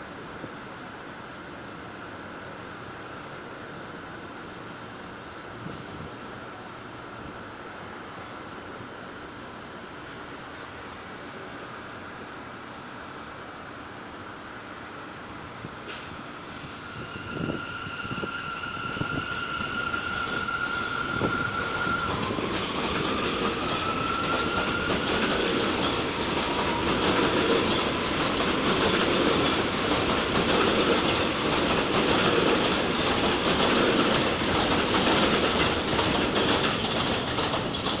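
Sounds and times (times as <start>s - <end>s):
train traction motor whine: 16.5s - 37.0s
wheels rumbling on rails: 17.0s - 38.0s.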